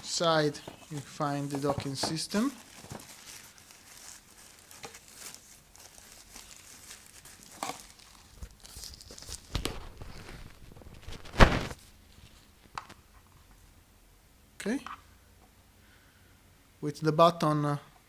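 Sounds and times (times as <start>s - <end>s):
packaging rustling and crinkling: 0.0s - 13.0s.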